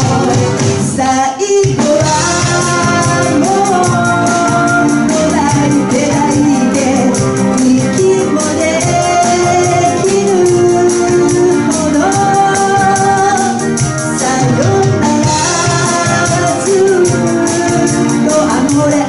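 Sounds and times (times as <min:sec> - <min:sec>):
live band playing pop song: 0:00.0 - 0:19.0.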